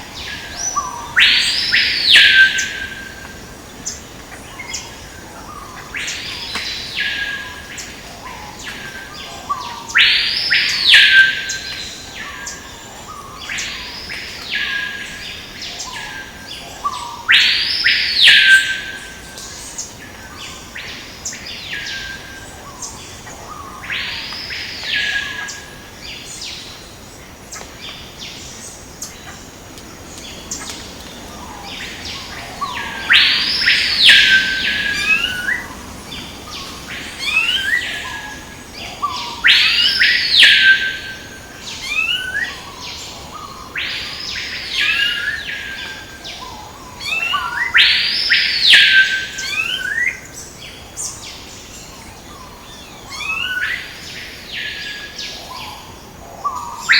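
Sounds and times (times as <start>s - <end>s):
bird chirps: 29.0s - 42.6s
bird whistling arched notes: 30.2s - 40.9s.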